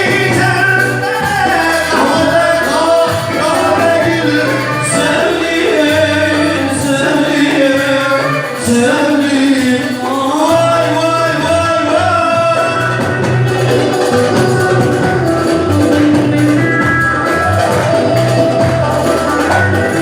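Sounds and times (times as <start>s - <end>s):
person singing ornamented melody: 0.0s - 13.0s.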